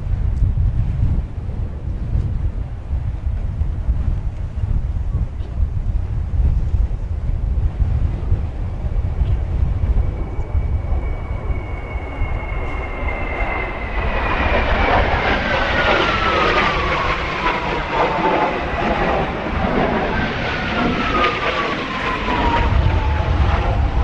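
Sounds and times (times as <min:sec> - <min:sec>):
wind buffeting microphone: 0:00.0 - 0:24.0
rushing jet noise: 0:05.5 - 0:24.0
jet turbine whine: 0:06.5 - 0:24.0.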